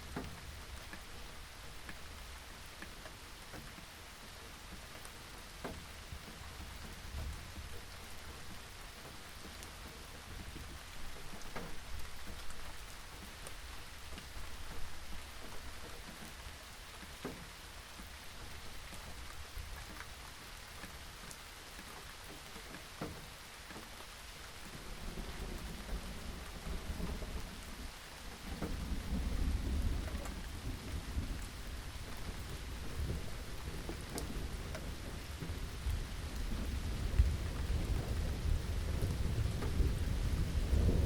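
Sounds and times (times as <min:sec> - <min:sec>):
raindrops ticking sharply: 0:00.0 - 0:41.0
steady rain falling: 0:00.0 - 0:41.0
low rumble of thunder: 0:24.4 - 0:41.0.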